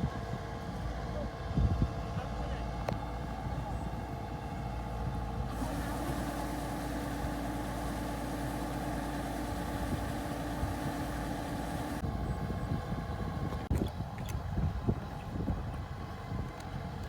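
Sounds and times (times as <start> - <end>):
farm machine engine running: 2.6 - 13.7.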